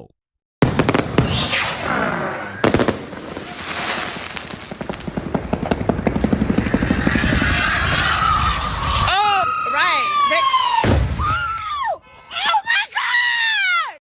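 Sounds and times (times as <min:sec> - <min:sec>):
fireworks popping: 0:00.6 - 0:08.7
firework bang: 0:00.6 - 0:09.1, 0:10.8 - 0:11.5
fireworks crackling and whistling: 0:00.6 - 0:11.5.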